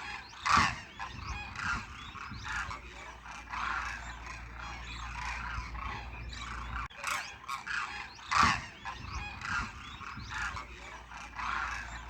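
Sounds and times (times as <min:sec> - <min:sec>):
cranes calling: 0:00.0 - 0:12.0.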